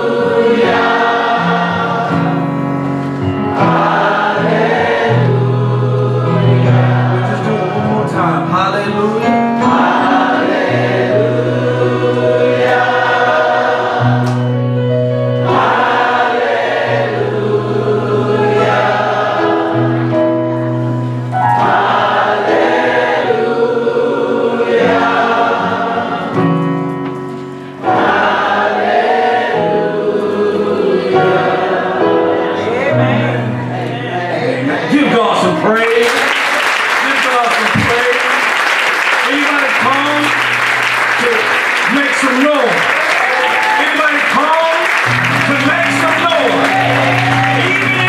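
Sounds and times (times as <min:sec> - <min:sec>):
gospel choir singing: 0:00.0 - 0:35.6, 0:36.5 - 0:48.0
instrumental accompaniment: 0:00.0 - 0:36.1, 0:37.6 - 0:48.0.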